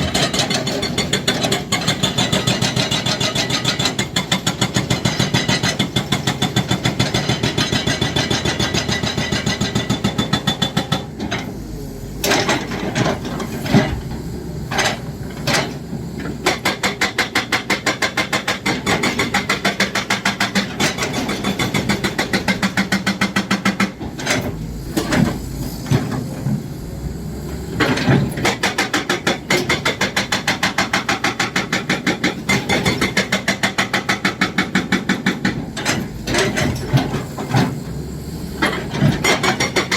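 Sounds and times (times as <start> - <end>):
hydraulic breaker hammering: 14.7 - 25.4, 27.8 - 37.7.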